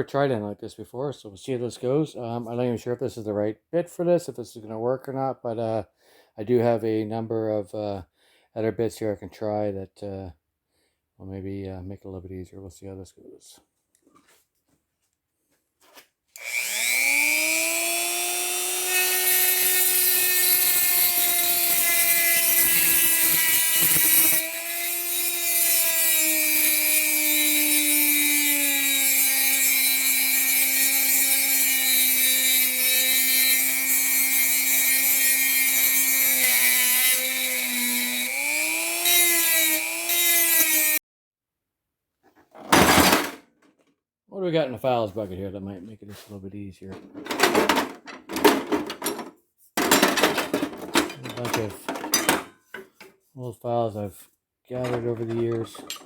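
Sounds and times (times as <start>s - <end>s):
rotary tool grinding metal: 16.4s - 41.0s, 54.8s - 56.0s.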